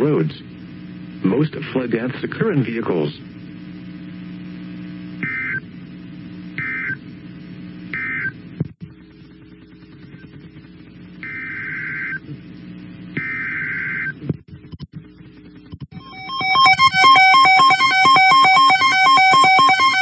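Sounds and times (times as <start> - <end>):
low steady hum: 0.0 - 20.0
two-tone modem screech data bursts: 16.0 - 20.0.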